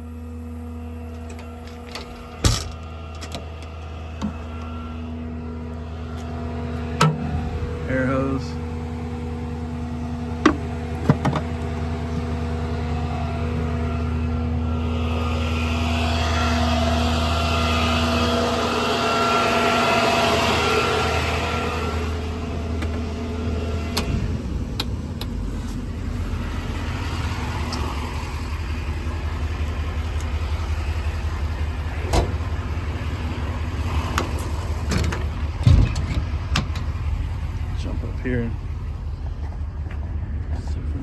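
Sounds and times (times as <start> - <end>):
diesel engine idling: 0.0 - 41.0
steady whine: 0.0 - 41.0.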